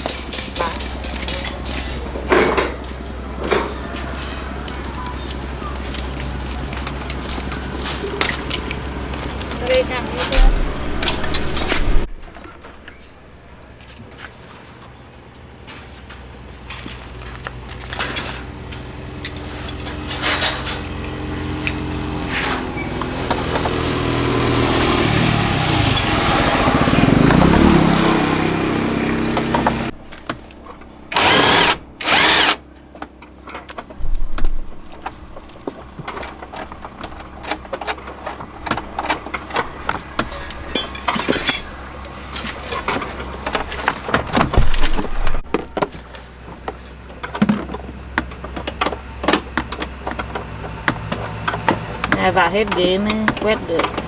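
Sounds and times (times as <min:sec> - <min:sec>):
clicks and knocks of parts: 0:29.4 - 0:54.0
small motor tool running: 0:31.1 - 0:32.6.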